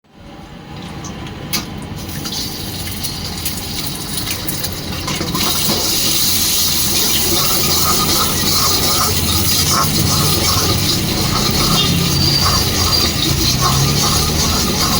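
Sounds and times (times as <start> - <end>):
hot wok sizzling: 1.8 - 14.9.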